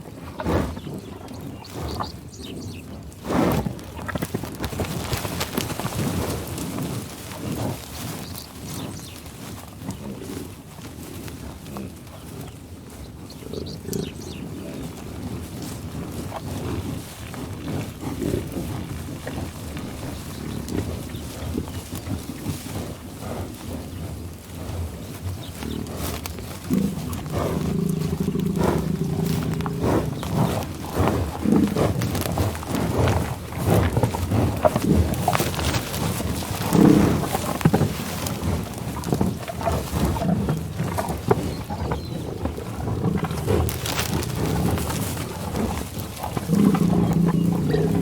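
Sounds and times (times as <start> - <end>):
rough cattle sounds: 0.0 - 48.0
cow mooing: 26.7 - 30.5, 46.4 - 48.0.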